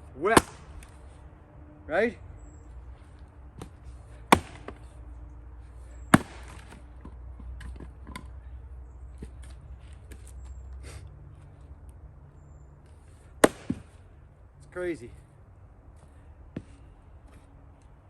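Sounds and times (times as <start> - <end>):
axe chopping firewood: 0.2 - 1.0, 3.5 - 4.9, 6.1 - 8.4, 13.3 - 14.0
knocks of wood: 3.6 - 4.8, 6.1 - 8.4, 13.4 - 14.0.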